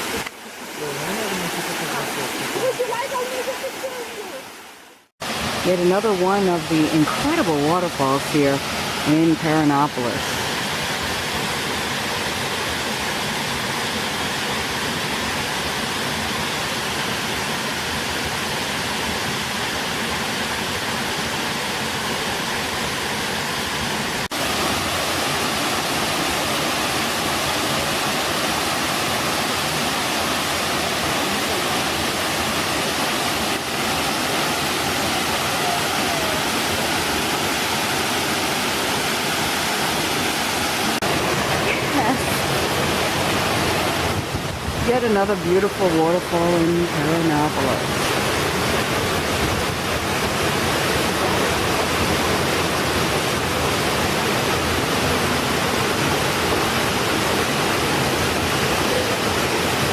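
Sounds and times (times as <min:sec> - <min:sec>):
waterfall pouring: 0:00.0 - 0:04.6, 0:21.4 - 0:59.9.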